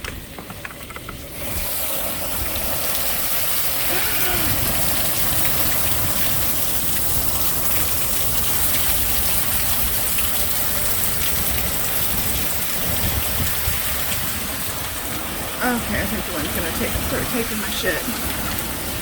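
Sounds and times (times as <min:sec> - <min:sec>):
strong storm wind blowing: 0:11.5 - 0:19.0
gusts rumbling on microphone: 0:11.6 - 0:15.6.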